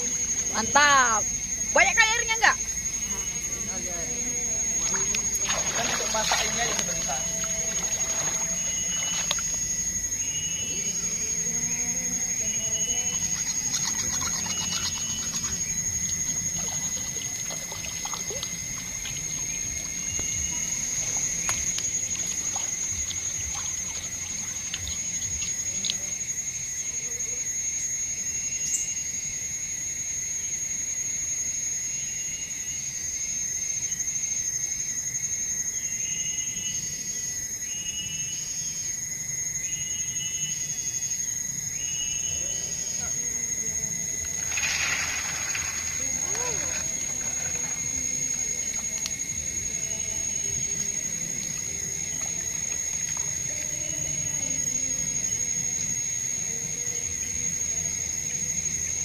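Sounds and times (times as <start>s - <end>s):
high-pitched insect drone: 0.0s - 59.0s
stream trickling: 4.6s - 10.0s, 12.9s - 26.3s, 44.1s - 54.9s.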